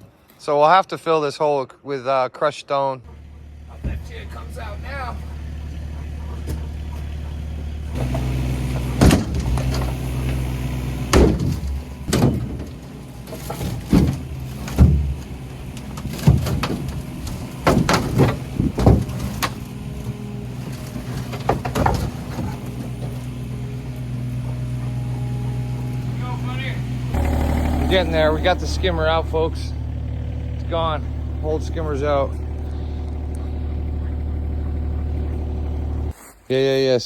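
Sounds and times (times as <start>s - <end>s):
engine running: 3.0s - 36.2s
sharp knocks and clanks: 3.7s - 4.6s, 5.2s - 26.2s.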